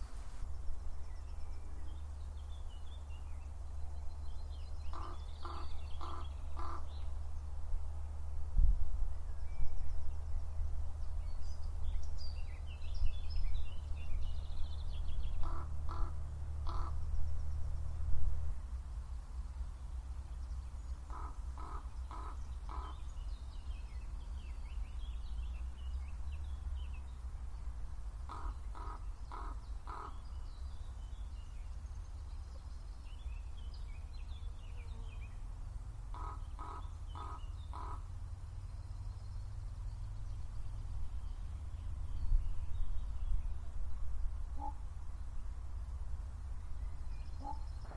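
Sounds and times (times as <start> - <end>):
small birds chirping: 0.0 - 7.6, 9.2 - 18.0, 18.6 - 47.9
raven calling: 4.9 - 6.9, 15.4 - 17.0, 21.1 - 23.0, 28.3 - 30.2, 36.1 - 38.1.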